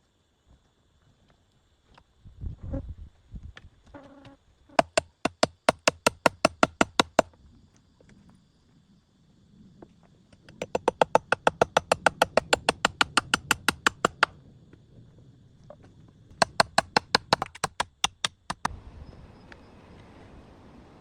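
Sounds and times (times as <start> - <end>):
rapid sharp knocks: 4.8 - 7.3, 10.4 - 14.3, 16.4 - 18.7.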